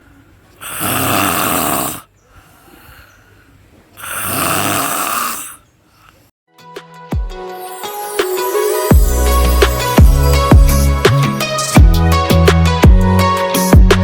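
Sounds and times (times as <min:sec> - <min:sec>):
quiet breathing: 0:00.0 - 0:06.3
man snoring: 0:00.6 - 0:02.1, 0:04.0 - 0:05.6.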